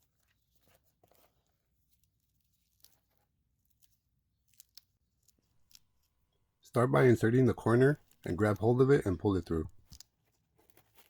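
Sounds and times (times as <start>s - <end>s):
faint clicks and rustles: 0.0s - 6.4s.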